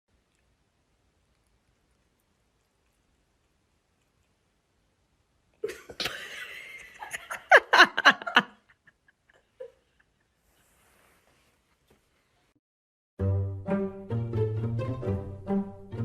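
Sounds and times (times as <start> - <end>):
person laughing: 5.6 - 10.2.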